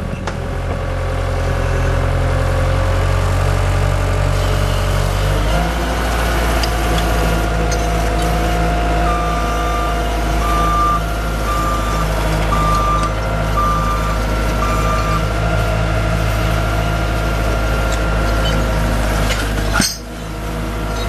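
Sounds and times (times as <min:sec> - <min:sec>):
diesel engine running: 0:00.0 - 0:21.0
reverse alarm beeping: 0:09.0 - 0:15.2.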